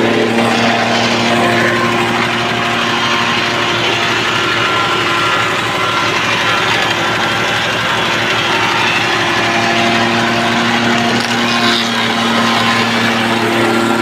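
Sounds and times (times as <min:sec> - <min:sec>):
woodworking planer running: 0:00.0 - 0:14.0.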